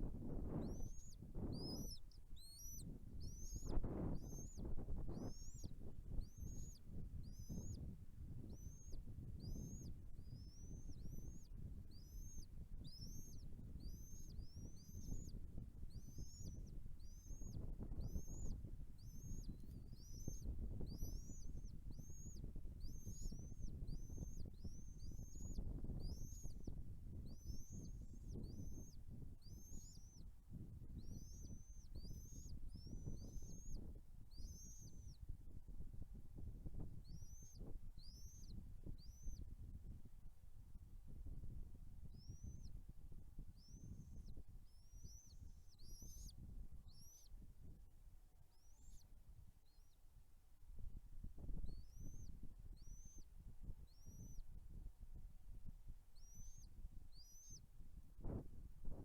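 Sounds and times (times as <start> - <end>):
chicks chirping: 0.4 - 7.8, 8.5 - 26.7.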